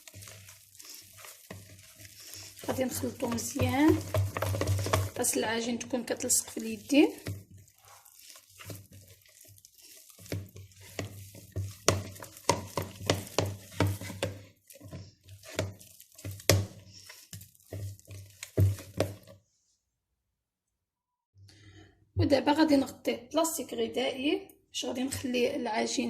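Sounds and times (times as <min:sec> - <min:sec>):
dough slapping and squelching: 0:00.0 - 0:19.5.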